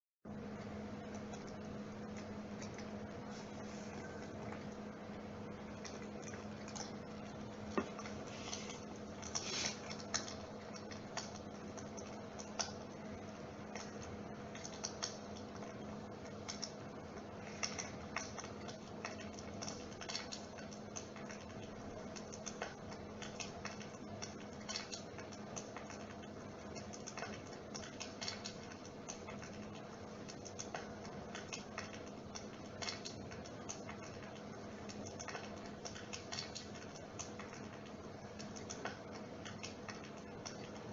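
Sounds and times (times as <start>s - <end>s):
electric fire motor hum: 0.3s - 14.7s
crackling clicks: 9.0s - 40.9s.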